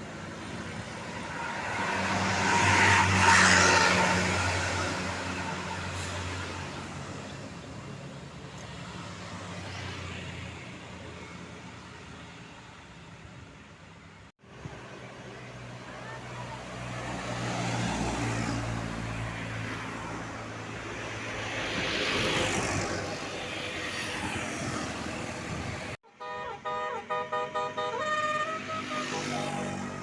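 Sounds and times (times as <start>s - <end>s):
bus passing: 0.0s - 30.0s
musical air horn tune: 26.0s - 29.7s.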